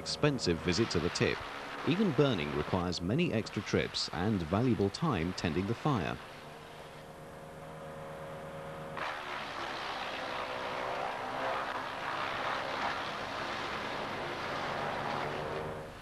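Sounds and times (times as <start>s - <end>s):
wood chipper engine running: 6.1s - 16.0s
dense wood chipping noise: 8.9s - 15.7s.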